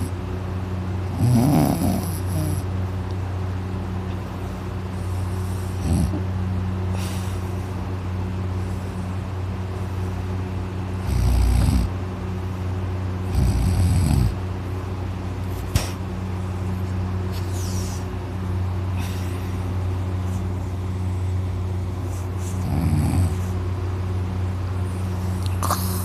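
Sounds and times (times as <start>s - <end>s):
steady low hum: 0.0s - 26.0s
loud heavy snoring: 1.1s - 2.7s, 5.2s - 6.2s, 11.0s - 11.9s, 13.2s - 14.4s, 22.6s - 23.5s.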